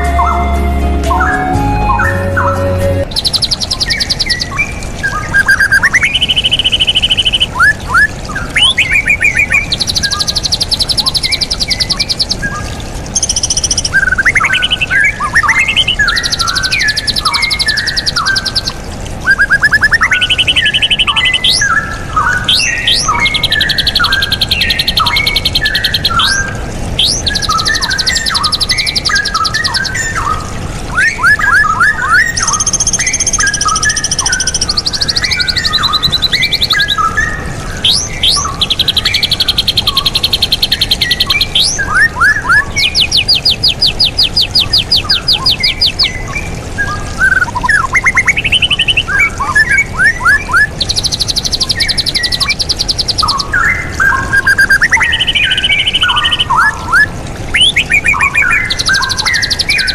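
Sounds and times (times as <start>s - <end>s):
bird singing bubbling phrases: 0.0s - 59.9s
rapid high bird trills: 31.3s - 37.1s.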